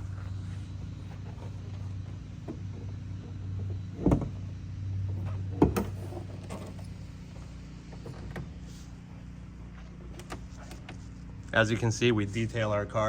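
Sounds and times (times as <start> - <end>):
steady low hum: 0.0 - 13.0
car hood clunks: 3.9 - 4.4.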